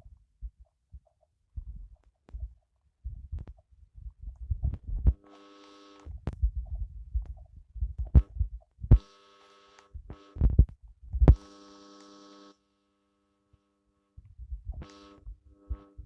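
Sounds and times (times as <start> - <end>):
electrical buzz: 4.7 - 6.4, 8.0 - 13.8, 14.7 - 16.0.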